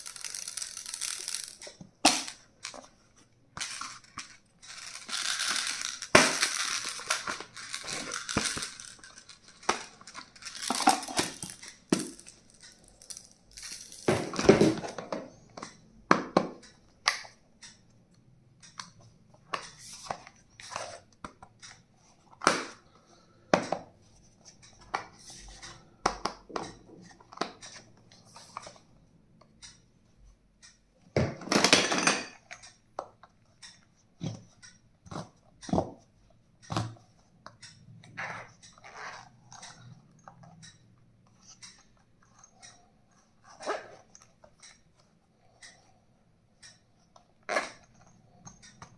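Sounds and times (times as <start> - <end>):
plastic items clicking and knocking: 0.0 - 17.4, 22.4 - 22.9, 31.2 - 33.3.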